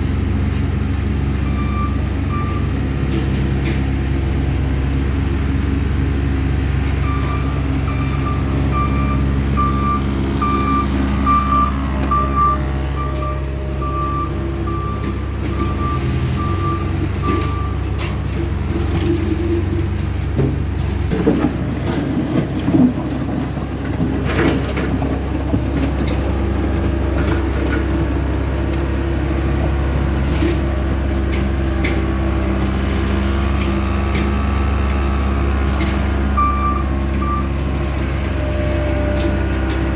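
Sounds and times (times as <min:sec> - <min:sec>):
diesel engines running: 0:00.0 - 0:39.9
backup alarm beeping: 0:01.4 - 0:02.7, 0:07.0 - 0:17.9, 0:36.4 - 0:37.6
gravel clattering and scraping: 0:17.0 - 0:36.4.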